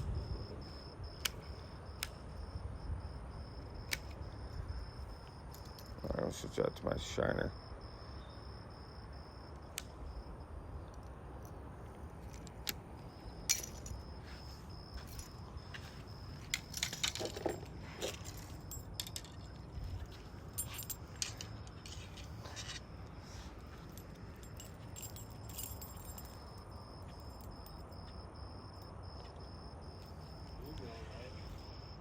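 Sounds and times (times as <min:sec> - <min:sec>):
small metal clinks and jangles: 0:00.3 - 0:09.0, 0:10.8 - 0:32.0.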